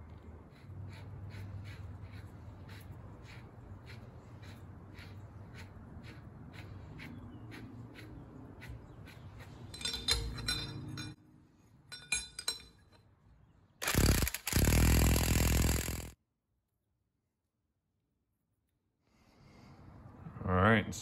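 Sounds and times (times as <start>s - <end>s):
tool scraping: 0.0s - 11.2s
sharp metal clinks: 9.7s - 11.2s
evenly spaced tool clicks: 13.8s - 16.2s.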